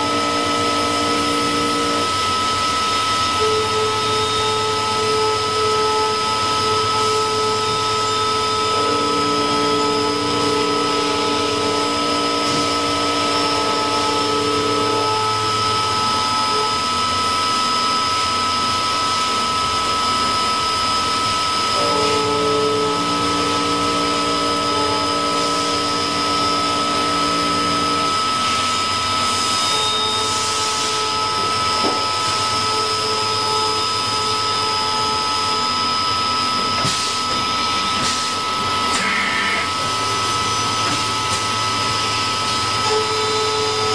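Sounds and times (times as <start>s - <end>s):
low tonal hum: 0.0s - 17.7s
machine hiss with high whine: 0.0s - 43.9s.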